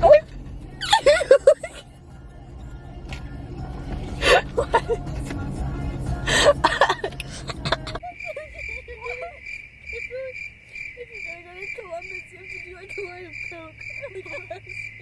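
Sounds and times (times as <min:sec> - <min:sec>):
crickets chirping: 0:08.0 - 0:15.0.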